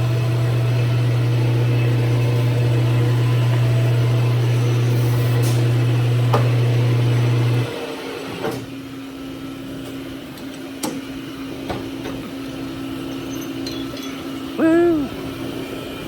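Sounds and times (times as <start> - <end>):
machine motor hum: 0.0 - 8.4.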